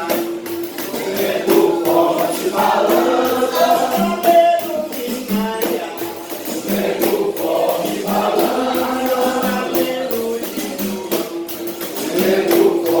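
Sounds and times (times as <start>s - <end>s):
percussion hits: 0.0s - 13.0s
person singing folk song: 0.0s - 13.0s.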